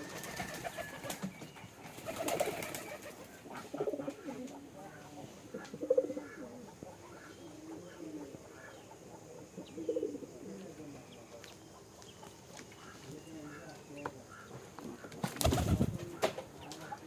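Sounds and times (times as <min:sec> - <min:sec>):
pigeons cooing: 0:00.0 - 0:12.0.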